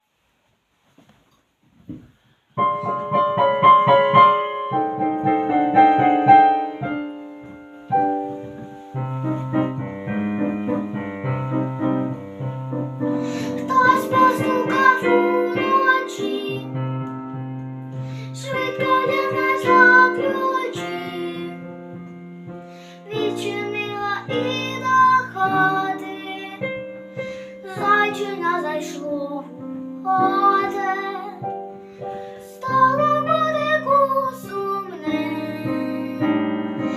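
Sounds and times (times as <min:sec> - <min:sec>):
keyboard playing: 0:02.6 - 0:18.0
girl singing: 0:13.0 - 0:17.4, 0:18.0 - 0:36.9.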